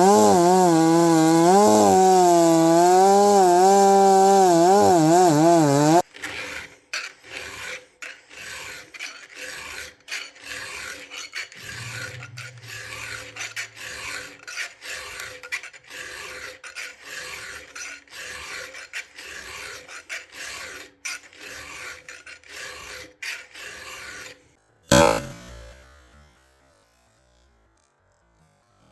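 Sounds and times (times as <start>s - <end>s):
chainsaw running at high revs: 0.0s - 6.1s, 24.9s - 26.6s
file rasping on chain: 0.0s - 25.3s.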